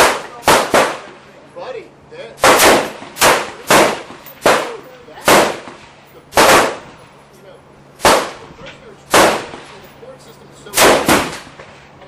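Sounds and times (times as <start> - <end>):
rifle shots: 0.0 - 1.2, 2.4 - 7.0, 8.0 - 8.5, 9.1 - 9.8, 10.7 - 11.7.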